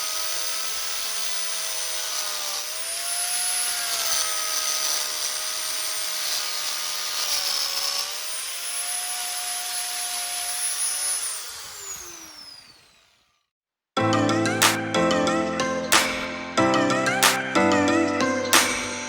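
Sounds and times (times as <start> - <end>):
angle grinder whine: 0.0 - 13.4.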